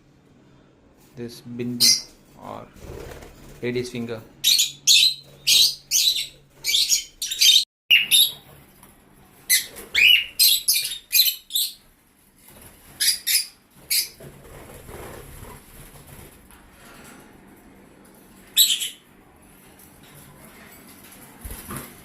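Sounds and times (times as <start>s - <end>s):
lovebirds chirping: 4.4s - 8.4s, 9.5s - 11.8s.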